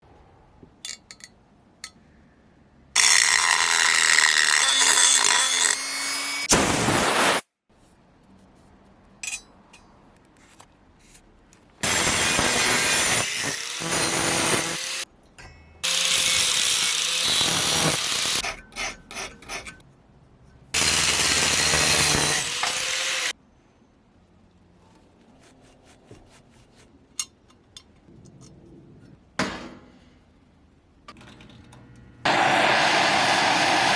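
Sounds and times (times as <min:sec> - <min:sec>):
handheld power tool on metal: 0:03.0 - 0:06.5, 0:11.8 - 0:15.1, 0:15.8 - 0:18.4, 0:20.8 - 0:23.3.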